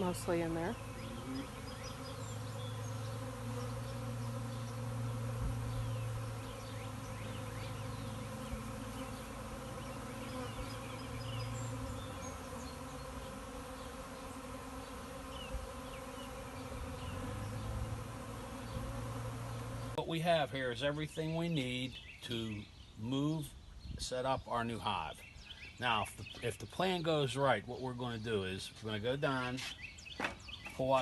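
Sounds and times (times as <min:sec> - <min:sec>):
bee swarm buzzing: 0:00.0 - 0:20.0.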